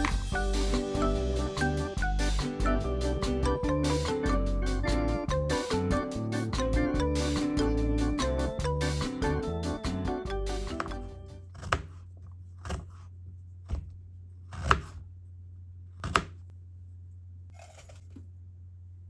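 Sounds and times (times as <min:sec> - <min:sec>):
knife chopping on cutting board: 0:11.6 - 0:12.0, 0:12.6 - 0:13.1, 0:13.7 - 0:15.0, 0:16.0 - 0:16.4.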